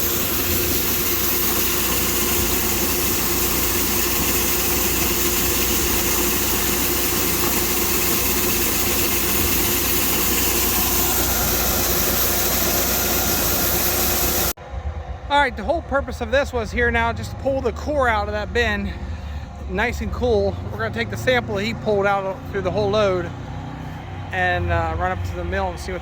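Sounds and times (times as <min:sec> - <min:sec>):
grain hissing: 0:00.0 - 0:14.6
engine hum: 0:00.0 - 0:26.0.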